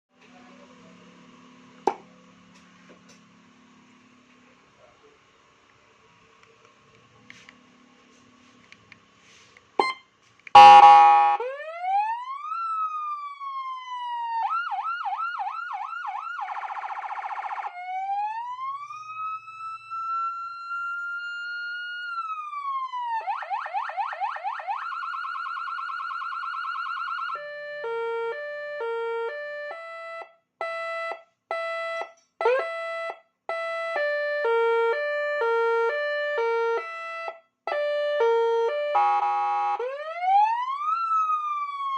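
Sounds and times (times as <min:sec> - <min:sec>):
siren yelp sweeps: 0:09.2 - 0:30.2, 0:32.4 - 0:41.9
siren warble: 0:09.8 - 0:10.0, 0:10.6 - 0:29.9, 0:33.9 - 0:41.9
siren tones stepping between pitches: 0:09.8 - 0:29.9, 0:33.5 - 0:41.9
siren wail: 0:09.8 - 0:41.9
loud short siren blast: 0:10.6 - 0:13.5, 0:31.5 - 0:41.9.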